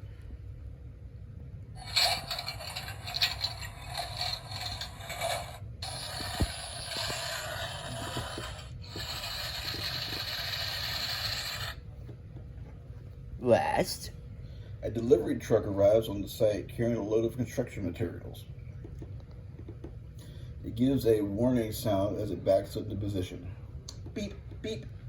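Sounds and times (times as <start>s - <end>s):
mechanical churning from small speaker: 1.8s - 11.8s.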